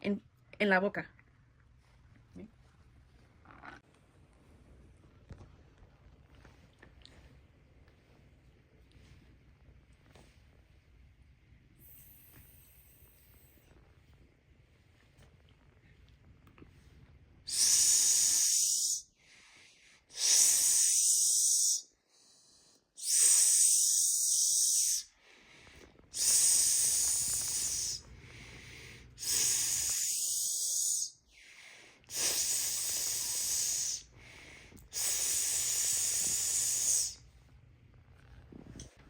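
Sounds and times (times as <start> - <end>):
person hissing: 17.5 - 19.1, 20.1 - 21.9, 23.0 - 25.1, 26.1 - 31.5, 32.1 - 34.1, 34.9 - 37.2.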